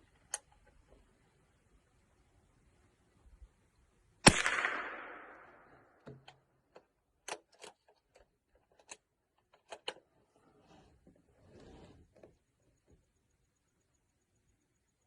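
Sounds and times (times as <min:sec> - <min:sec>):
rifle shot: 0:04.2 - 0:06.0.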